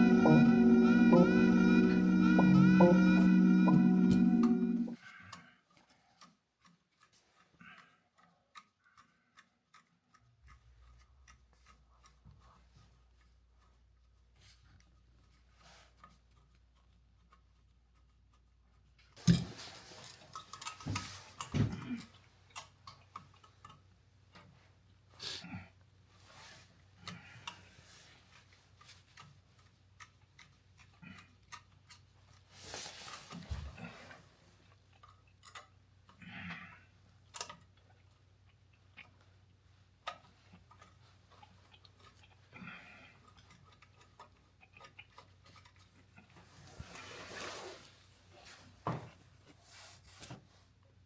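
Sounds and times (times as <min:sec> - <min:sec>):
faint low hum: 0:00.0 - 0:05.2
faint clicks and ticks: 0:04.4 - 0:19.2, 0:20.0 - 0:25.2, 0:26.1 - 0:46.9.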